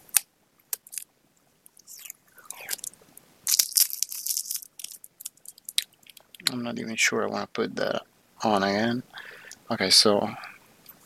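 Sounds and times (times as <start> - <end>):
tape crackling: 0.0 - 6.6.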